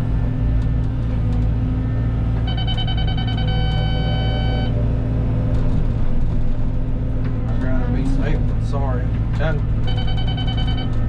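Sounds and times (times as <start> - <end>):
excavator diesel engine running: 0.0 - 11.0
rapid electronic beeping: 2.5 - 4.7, 9.9 - 11.0.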